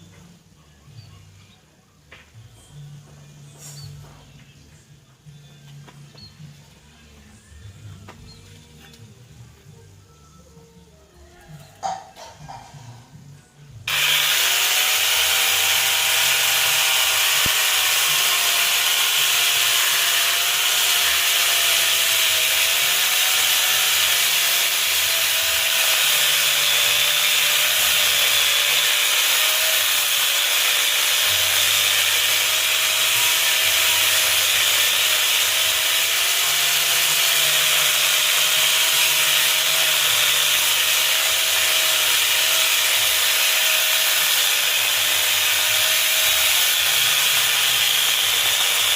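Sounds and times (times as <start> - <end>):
chainsaw sawing through wood: 13.9 - 48.9.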